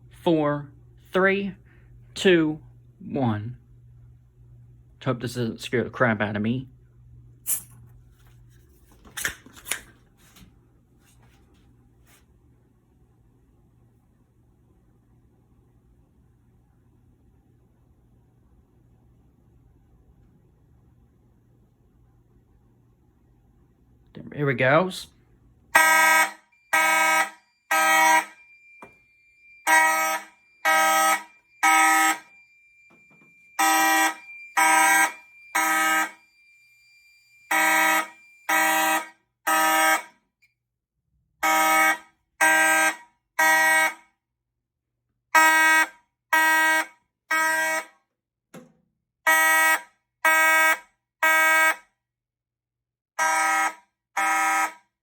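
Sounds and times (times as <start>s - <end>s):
buzzy fire alarm horns: 25.7s - 40.2s, 41.4s - 44.2s, 45.3s - 48.0s, 49.2s - 51.9s, 53.2s - 55.0s
faint high beep: 27.6s - 38.5s.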